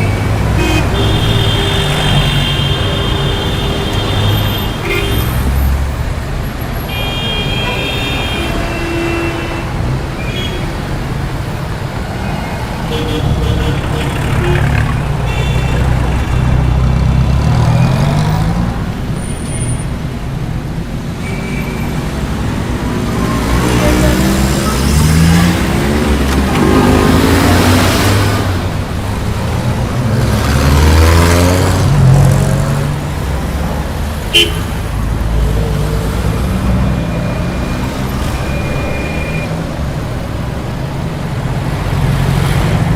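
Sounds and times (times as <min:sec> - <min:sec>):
city road traffic: 0:00.0 - 0:42.9
vehicles passing close by: 0:00.0 - 0:42.9
car horn toots: 0:34.3 - 0:34.8.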